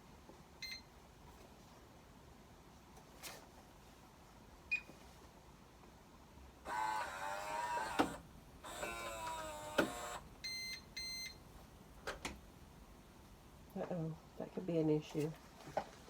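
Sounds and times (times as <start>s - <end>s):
lock motor whirring: 6.7s - 10.2s
short beeps: 10.5s - 11.4s.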